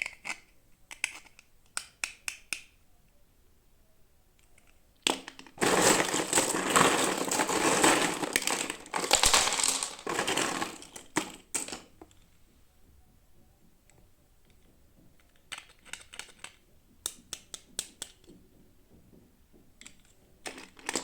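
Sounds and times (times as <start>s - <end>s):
packaging click: 5.1s - 11.8s
packaging crinkling and crackling: 5.1s - 11.9s.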